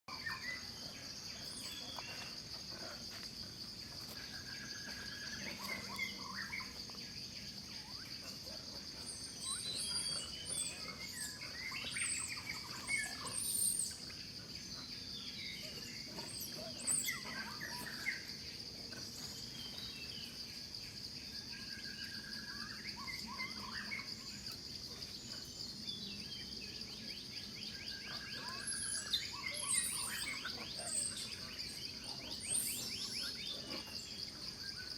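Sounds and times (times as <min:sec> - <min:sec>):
bird chirps and whistled calls: 0:09.0 - 0:14.1, 0:15.2 - 0:18.3, 0:21.8 - 0:24.4, 0:27.6 - 0:34.0.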